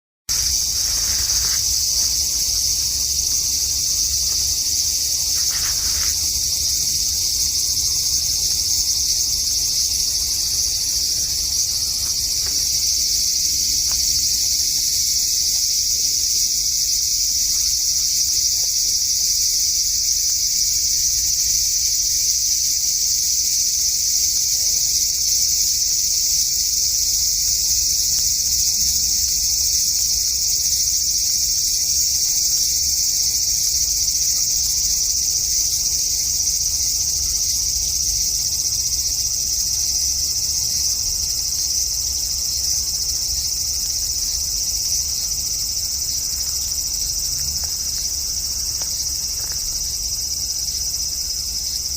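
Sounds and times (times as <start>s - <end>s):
cicada buzzing: 0.3s - 51.9s.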